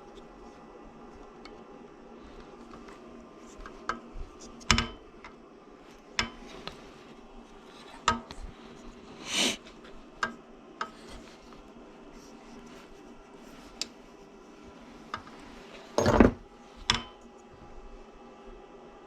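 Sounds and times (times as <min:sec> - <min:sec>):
short hiss: 0:09.2 - 0:09.7.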